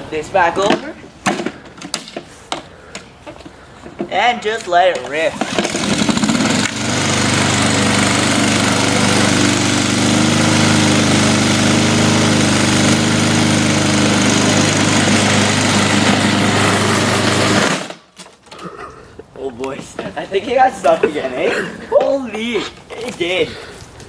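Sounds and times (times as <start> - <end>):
lawnmower engine running: 5.0 - 18.1.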